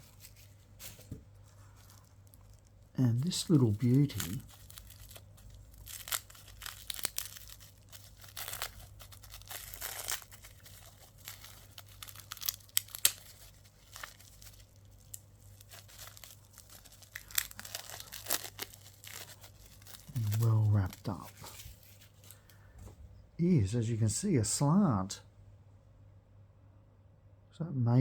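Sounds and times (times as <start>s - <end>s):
packaging crinkling and tearing: 0.0s - 22.5s.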